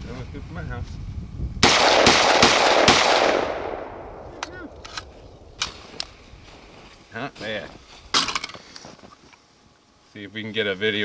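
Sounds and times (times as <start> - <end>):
rifle shots echoing: 1.6 - 6.0.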